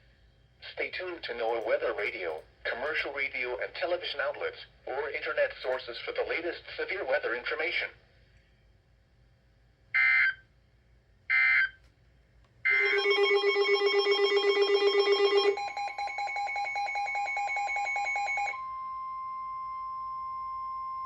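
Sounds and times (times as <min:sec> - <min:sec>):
steady alarm tone: 0:10.0 - 0:10.4, 0:12.7 - 0:20.9
pulsing electronic alert tone: 0:12.7 - 0:15.8.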